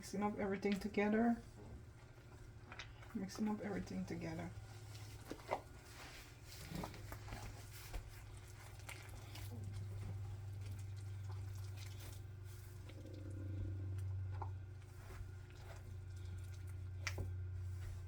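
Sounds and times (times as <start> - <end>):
hands kneading dough: 0.0 - 18.0
steady low hum: 0.0 - 18.0.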